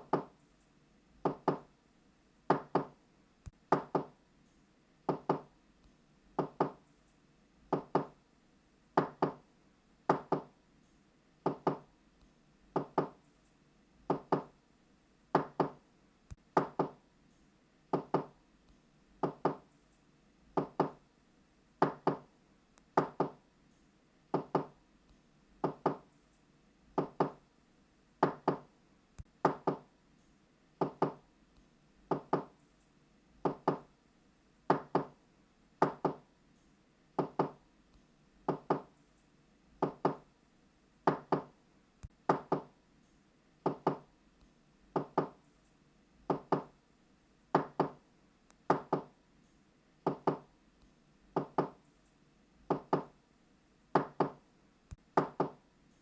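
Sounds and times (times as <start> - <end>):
knocking on a door: 0.0 - 0.3, 1.2 - 1.7, 2.5 - 3.0, 3.7 - 4.2, 5.1 - 5.5, 6.4 - 6.8, 7.7 - 8.2, 9.0 - 9.4, 10.1 - 10.5, 11.4 - 11.9, 12.8 - 13.2, 14.1 - 14.5, 15.4 - 15.8, 16.6 - 17.0, 17.9 - 18.4, 19.2 - 19.6, 20.6 - 21.0, 21.8 - 22.3, 23.0 - 23.4, 24.3 - 24.8, 25.6 - 26.0, 27.0 - 27.4, 28.2 - 28.7, 29.4 - 29.9, 30.8 - 31.2, 32.1 - 32.5, 33.4 - 33.9, 34.7 - 35.1, 35.8 - 36.2, 37.2 - 37.6, 38.5 - 38.9, 39.8 - 40.2, 41.1 - 41.5, 42.3 - 42.7, 43.6 - 44.1, 45.0 - 45.4, 46.3 - 46.7, 47.6 - 48.0, 48.7 - 49.1, 50.1 - 50.5, 51.4 - 51.8, 52.7 - 53.1, 54.0 - 54.4, 55.2 - 55.6.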